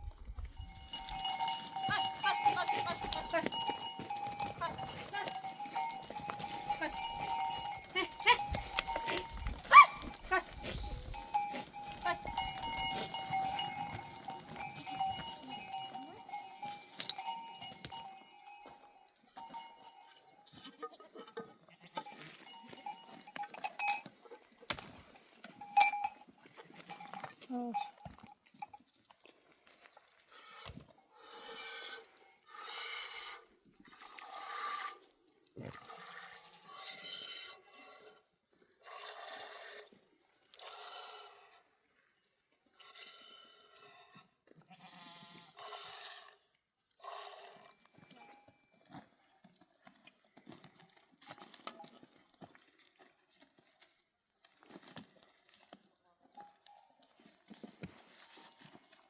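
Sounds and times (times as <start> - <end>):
goats bleating: 1.0 - 16.4, 44.7 - 45.6.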